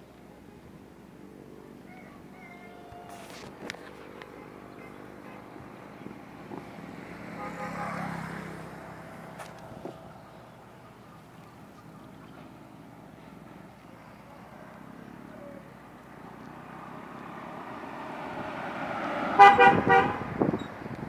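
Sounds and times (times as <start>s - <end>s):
road traffic noise: 0.0s - 21.0s
vehicle horn toots: 7.2s - 8.4s, 19.4s - 20.6s.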